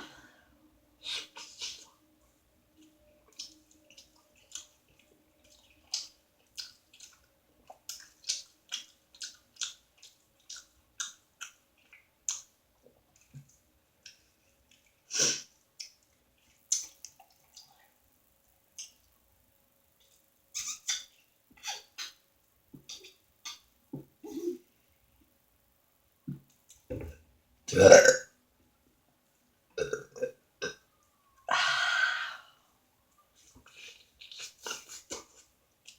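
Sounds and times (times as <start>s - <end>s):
lip smacks and mouth clicks: 2.8s - 12.5s, 15.8s - 17.8s, 18.7s - 19.1s, 33.6s - 35.9s
wet chewing: 3.3s - 12.5s.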